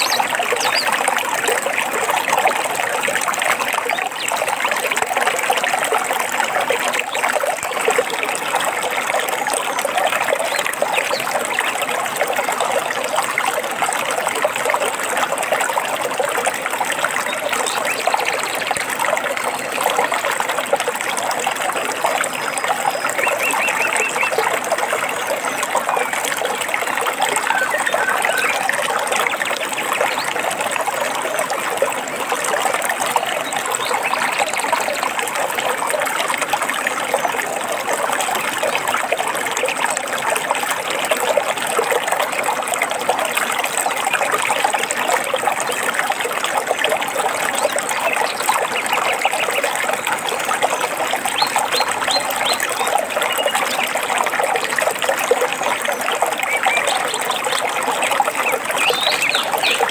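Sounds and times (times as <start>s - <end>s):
stream trickling over rocks: 0.0s - 59.9s
bird chirps: 27.4s - 28.9s.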